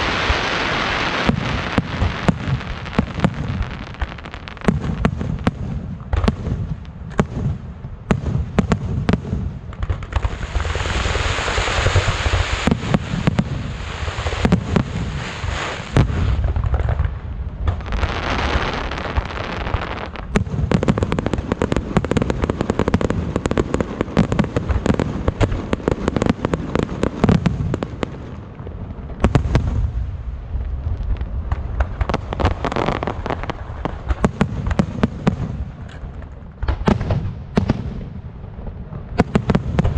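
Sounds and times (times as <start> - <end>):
firework shells booming: 31.4 - 38.2.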